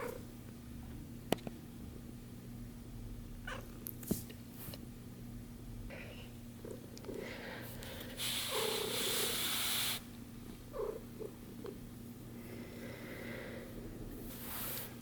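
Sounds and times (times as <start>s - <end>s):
loud hissing noise: 8.0s - 10.1s
kitten purring: 8.3s - 10.0s.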